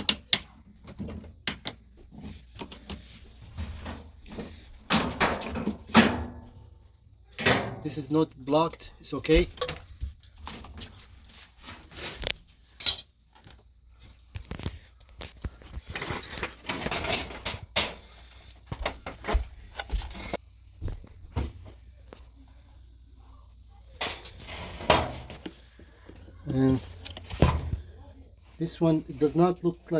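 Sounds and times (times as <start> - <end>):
scraping and rubbing: 24.2 - 25.5.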